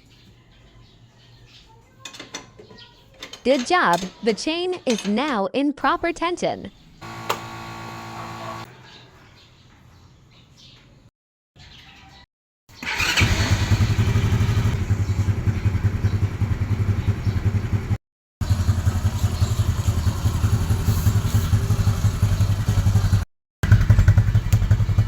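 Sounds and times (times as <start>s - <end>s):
motorcycle engine idling: 7.0s - 8.6s, 13.1s - 25.0s.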